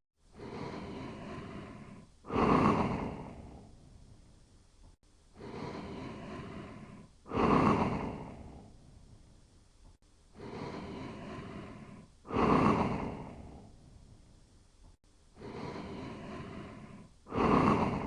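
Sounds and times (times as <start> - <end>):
person snoring: 0.3 - 3.9, 5.4 - 9.0, 10.4 - 14.1, 15.4 - 18.0.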